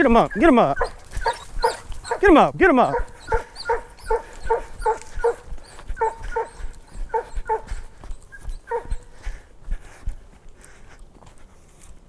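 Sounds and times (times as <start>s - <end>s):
hounds barking: 0.0s - 9.4s.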